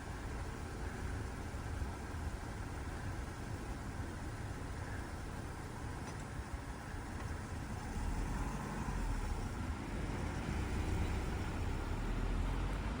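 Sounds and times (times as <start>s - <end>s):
heavy vehicle engine rumble: 0.0s - 13.0s.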